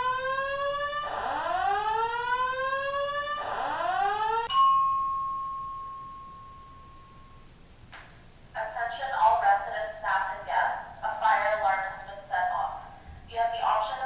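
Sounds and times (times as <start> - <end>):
fire alarm whooping: 0.0 - 4.6
bell-like ding: 4.5 - 7.5.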